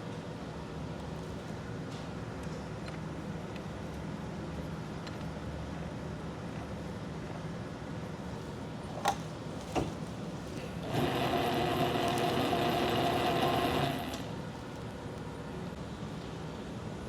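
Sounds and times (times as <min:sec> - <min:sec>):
lathe humming: 0:10.7 - 0:14.3
mechanical whir with whine: 0:10.8 - 0:14.3.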